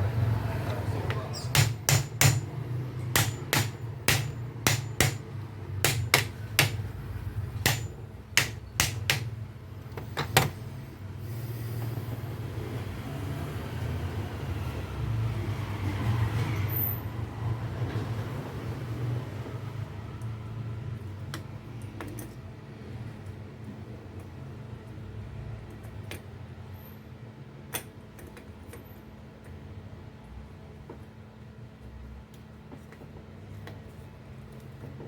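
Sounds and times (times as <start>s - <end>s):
hammer striking metal: 1.5s - 6.9s, 7.5s - 9.4s.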